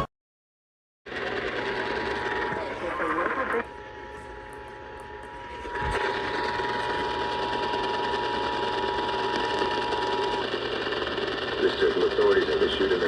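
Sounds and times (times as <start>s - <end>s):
radio hiss: 2.4s - 4.2s, 11.6s - 13.0s.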